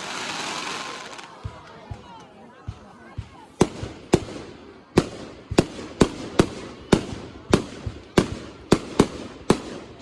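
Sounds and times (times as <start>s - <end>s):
fireworks bangs: 0.0s - 1.6s, 3.6s - 10.0s.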